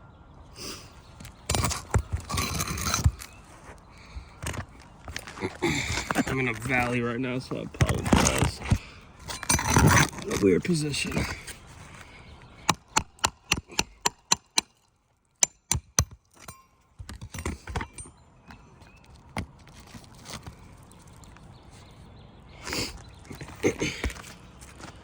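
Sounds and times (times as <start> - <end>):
scraping on roof shingles: 1.3 - 14.1
hammer tapping metal tool: 12.7 - 14.7, 15.4 - 18.2.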